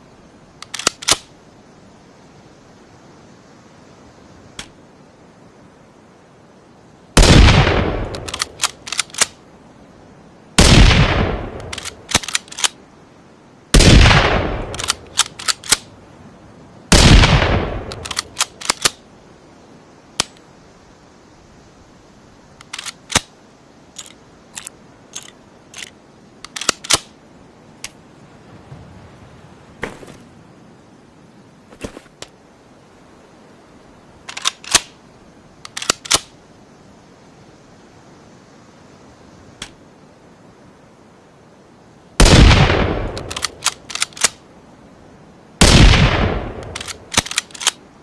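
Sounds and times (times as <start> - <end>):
sharp clicks: 0.6 - 1.3, 8.0 - 9.4, 11.6 - 12.8, 14.6 - 15.9, 17.8 - 19.0, 20.2 - 20.4, 22.6 - 23.3, 24.0 - 27.1, 34.3 - 34.9, 35.6 - 36.3, 43.0 - 44.4, 46.5 - 47.8
rifle gunshots: 7.2 - 8.5, 10.6 - 12.4, 13.8 - 15.7, 16.9 - 18.9, 42.2 - 43.5, 45.6 - 47.4.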